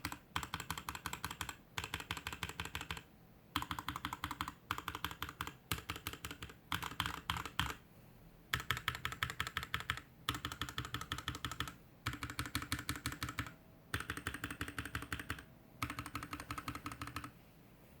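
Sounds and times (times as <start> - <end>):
mechanical keyboard typing: 0.0 - 7.8, 8.5 - 17.4.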